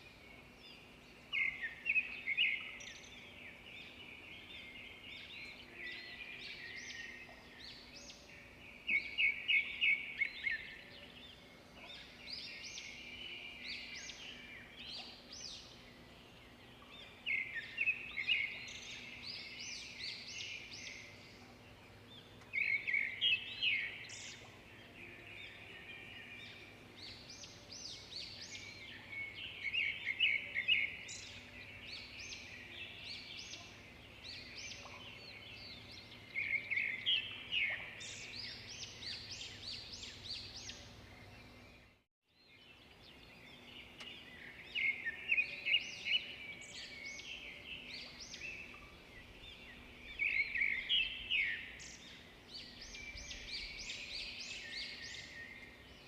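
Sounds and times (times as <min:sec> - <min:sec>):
birds chirping and singing: 0:00.0 - 0:56.0.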